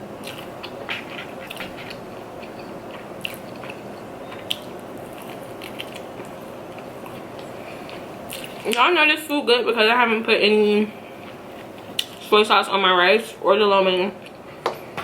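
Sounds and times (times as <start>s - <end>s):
person chewing food: 0.2s - 8.8s, 11.0s - 12.2s.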